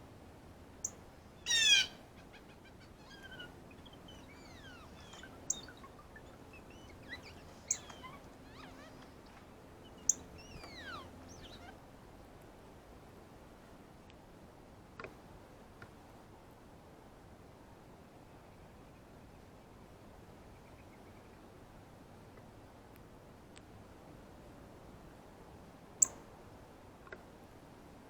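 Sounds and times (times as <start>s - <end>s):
harsh bird call: 1.4s - 11.7s.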